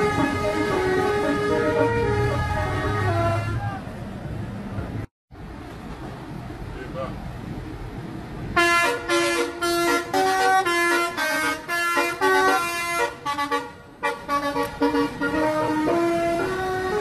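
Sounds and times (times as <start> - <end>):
bus horn playing a melody: 0.0 - 3.8, 8.5 - 17.0.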